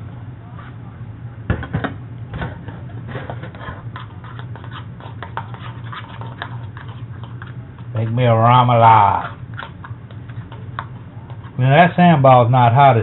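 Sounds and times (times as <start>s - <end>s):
steady low hum: 0.0s - 13.0s
spoon scraping bowl: 3.1s - 11.9s.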